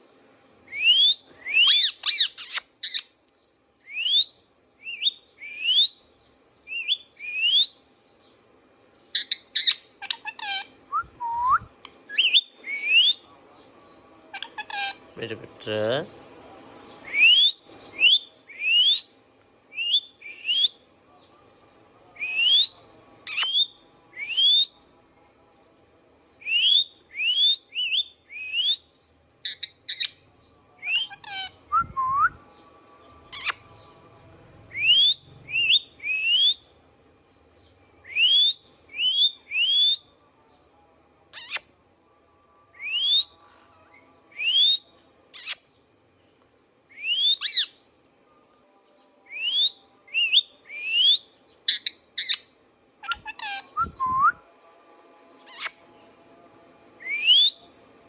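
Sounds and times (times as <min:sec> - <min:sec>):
parakeet whistling calls: 0:00.7 - 0:03.1, 0:09.2 - 0:10.7, 0:17.0 - 0:19.1, 0:22.2 - 0:24.7, 0:29.4 - 0:30.2, 0:33.3 - 0:33.6, 0:34.7 - 0:36.6, 0:38.1 - 0:40.0, 0:41.4 - 0:41.6, 0:45.4 - 0:45.6, 0:47.0 - 0:47.8, 0:49.4 - 0:54.0, 0:55.5 - 0:55.8, 0:57.0 - 0:57.6.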